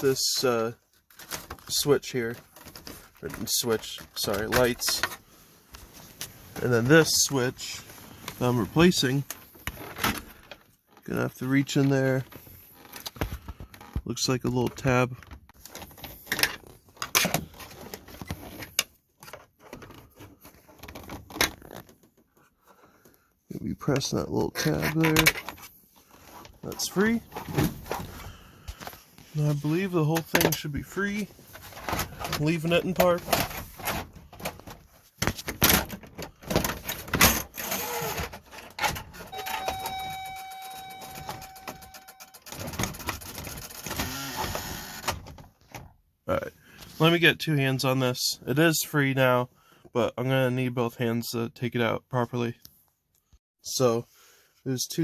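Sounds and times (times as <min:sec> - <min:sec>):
hands rustling plastic parts: 0:00.0 - 0:23.3, 0:24.0 - 0:44.2
electronic warning tone: 0:39.3 - 0:42.4.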